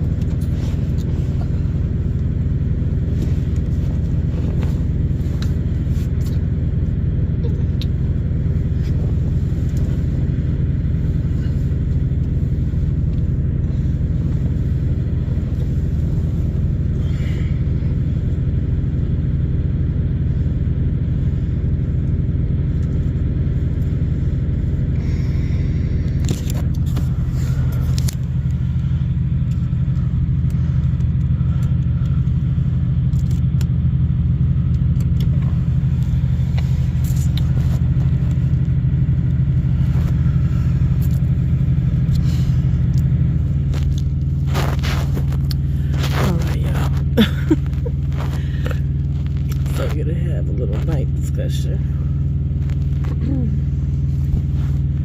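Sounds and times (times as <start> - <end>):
diesel engine idling: 0.0 - 55.0
rustling: 43.2 - 50.0.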